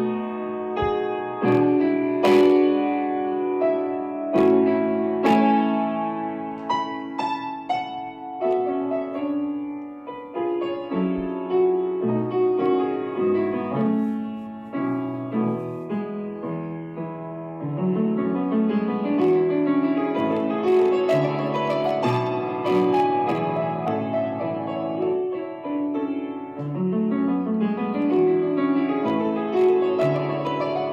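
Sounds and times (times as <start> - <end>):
solo piano music: 0.0 - 30.9.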